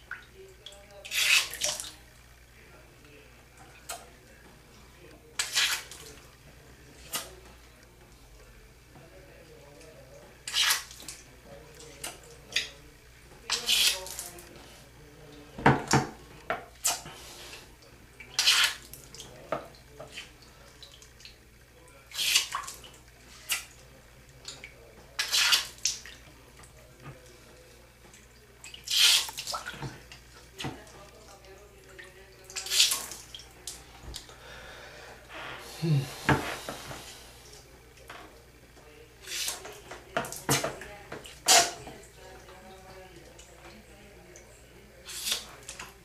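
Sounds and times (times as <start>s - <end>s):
water splashing into a sink: 0.0s - 2.1s, 5.3s - 6.2s, 10.4s - 12.8s, 17.8s - 27.3s, 28.0s - 34.3s, 38.0s - 46.0s.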